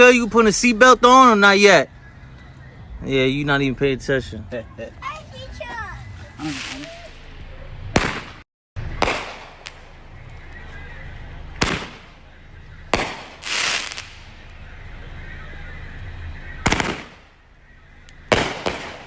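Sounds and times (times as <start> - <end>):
fireworks bangs: 5.8 - 17.4, 18.2 - 19.0.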